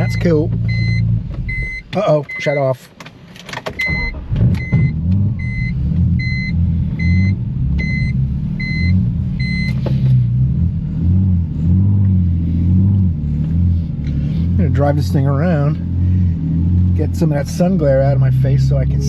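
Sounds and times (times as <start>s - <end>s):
dashboard warning chime: 0.0s - 2.8s, 3.8s - 9.8s
car engine restarting and idling: 0.0s - 19.0s.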